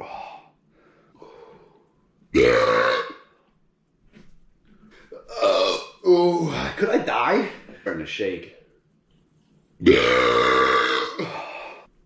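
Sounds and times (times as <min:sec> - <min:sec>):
man belching: 0:02.4 - 0:03.3, 0:05.2 - 0:06.1, 0:09.8 - 0:11.9.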